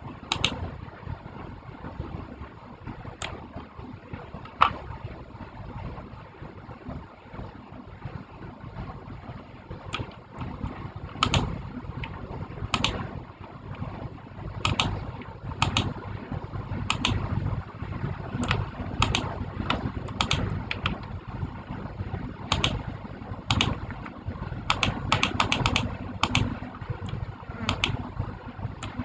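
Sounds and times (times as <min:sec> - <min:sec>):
steady low rumble: 0:00.0 - 0:29.0
keyboard keys pressed: 0:00.3 - 0:00.6, 0:09.9 - 0:13.1, 0:14.6 - 0:15.0, 0:15.6 - 0:15.9, 0:16.9 - 0:17.2, 0:18.4 - 0:21.1, 0:22.5 - 0:22.9, 0:23.5 - 0:28.0.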